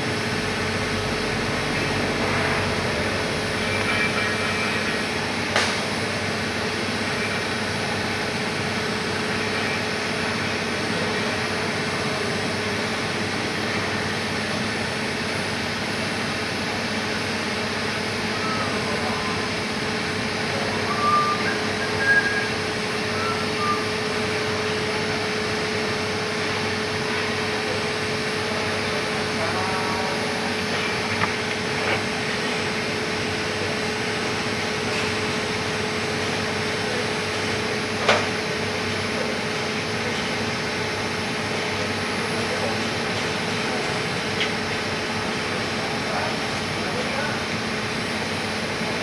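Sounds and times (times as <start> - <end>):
machine hum and hiss: 0.0 - 49.0
short high blips: 20.6 - 23.9.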